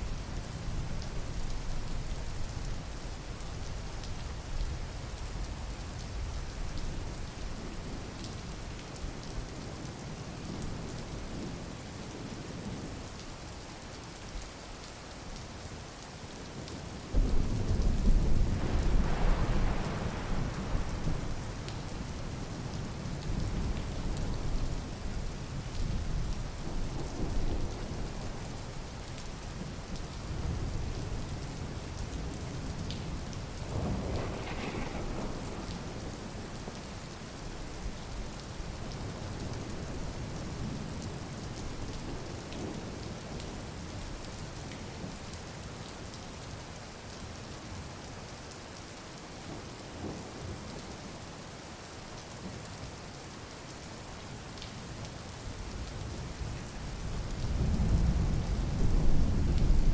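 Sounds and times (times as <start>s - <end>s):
steady rain falling: 0.0s - 59.9s
thunder clap rumbling: 17.2s - 21.6s, 33.7s - 36.5s.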